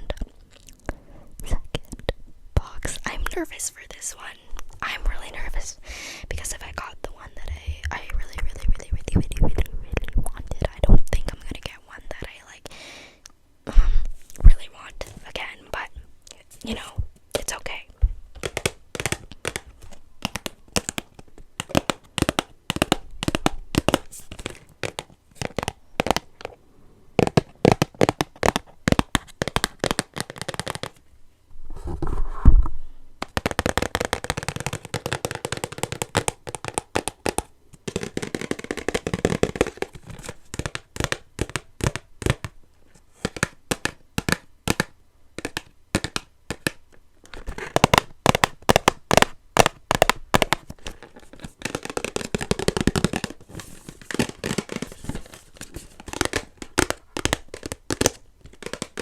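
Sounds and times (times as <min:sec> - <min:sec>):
fingertips tapping on cardboard box: 0:17.4 - 0:26.6, 0:27.2 - 0:31.0, 0:33.2 - 0:59.0
packaging crinkling: 0:45.5 - 0:59.0.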